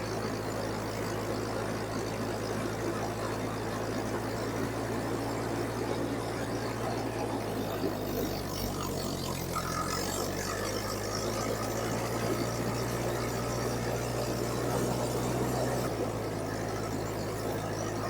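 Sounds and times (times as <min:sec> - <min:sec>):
tractor engine idling: 0:00.0 - 0:18.0.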